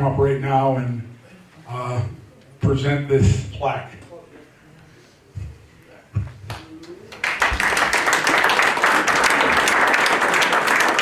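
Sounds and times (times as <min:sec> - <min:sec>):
audience applauding: 0:06.5 - 0:11.0.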